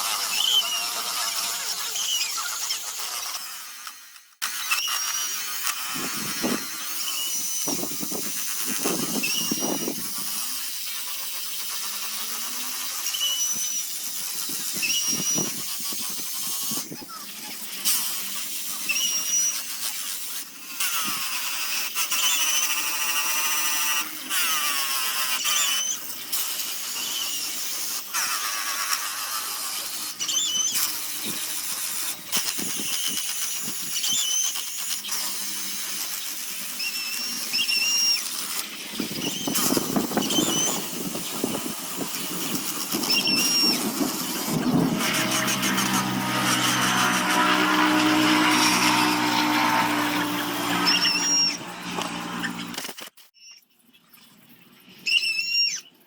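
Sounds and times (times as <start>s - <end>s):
power sander whining on wood: 38.8s - 52.8s.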